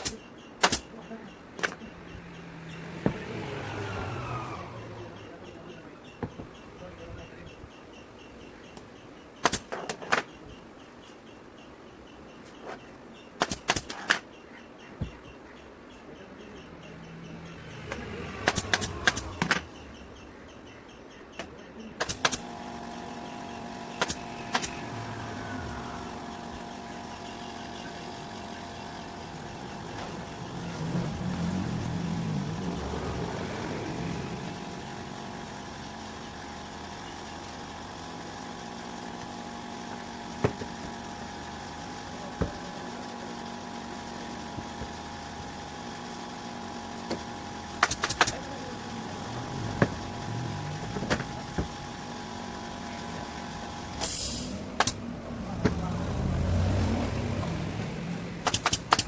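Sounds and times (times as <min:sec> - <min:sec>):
sharp clicks: 0:00.0 - 0:02.8, 0:07.5 - 0:10.5, 0:12.5 - 0:14.4, 0:15.1 - 0:20.0, 0:21.2 - 0:22.5, 0:23.9 - 0:24.9, 0:47.1 - 0:48.5, 0:54.0 - 0:55.0, 0:58.4 - 0:59.0
mechanical hum: 0:21.9 - 0:59.0.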